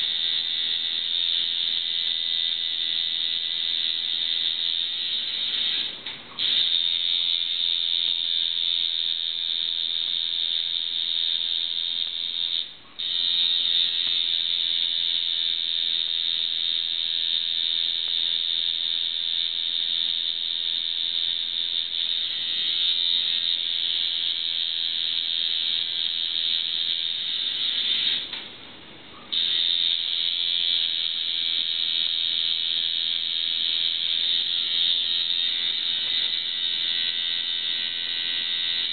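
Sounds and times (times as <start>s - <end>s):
tattoo machine buzzing: 0.0s - 28.3s, 29.3s - 38.9s.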